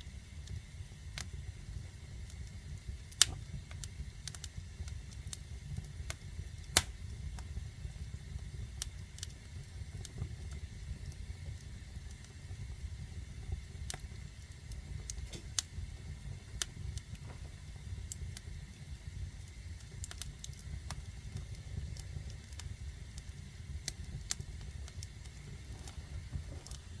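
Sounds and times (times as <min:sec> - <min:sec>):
fire crackling and popping: 0:00.0 - 0:27.0
low rumble of flames: 0:00.0 - 0:27.0.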